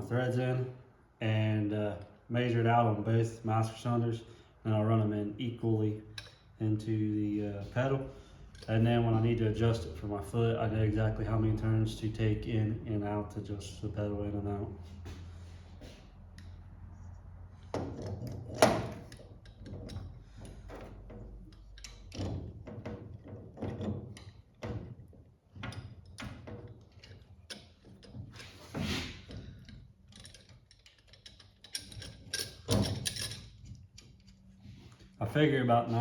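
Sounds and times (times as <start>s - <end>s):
metal tools clinking on workbench: 29.4s - 34.1s.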